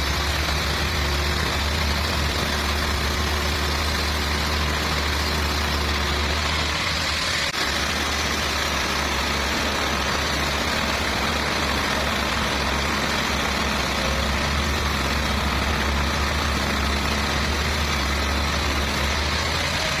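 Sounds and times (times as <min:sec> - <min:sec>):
sawmill machinery running: 0:00.0 - 0:20.0.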